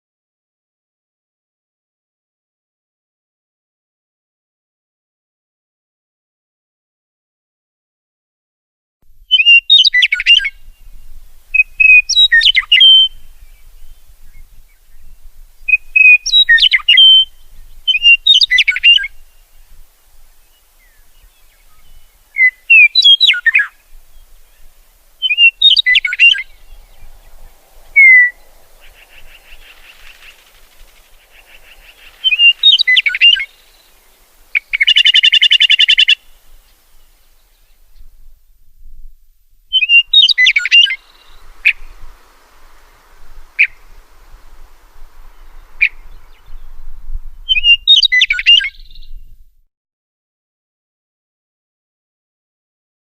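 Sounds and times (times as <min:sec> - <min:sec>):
songbird warbling: 0:09.3 - 0:38.3, 0:39.7 - 0:49.3.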